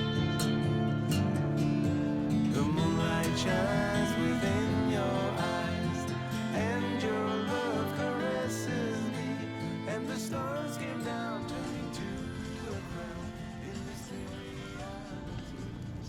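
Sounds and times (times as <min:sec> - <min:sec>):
acoustic guitar pop song: 0:00.0 - 0:16.0
person singing: 0:02.4 - 0:16.0.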